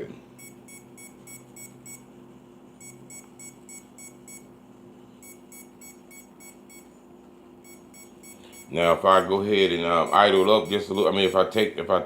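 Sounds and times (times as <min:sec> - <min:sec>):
model helicopter high-pitched beeps: 0:05.2 - 0:06.9, 0:07.6 - 0:09.0, 0:10.0 - 0:11.2.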